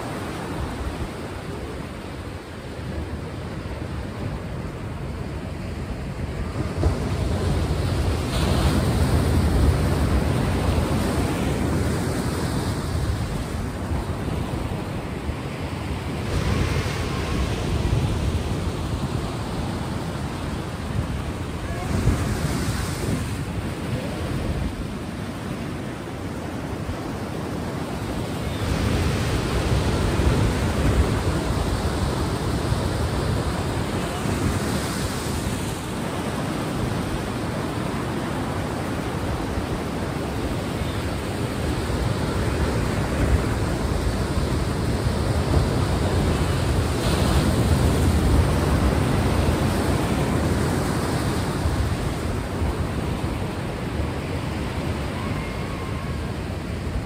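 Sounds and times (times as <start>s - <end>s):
ocean waves breaking: 0.0s - 57.0s.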